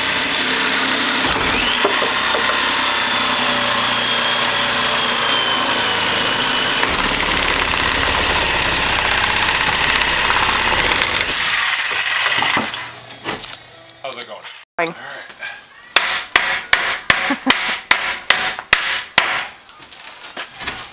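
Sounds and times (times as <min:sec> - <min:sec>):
petrol saw engine running: 0:00.0 - 0:11.3.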